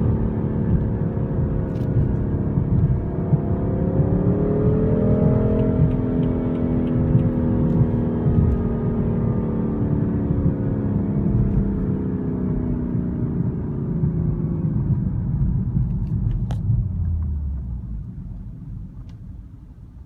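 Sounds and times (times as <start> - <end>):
car engine revs dropping: 0.0 - 12.0.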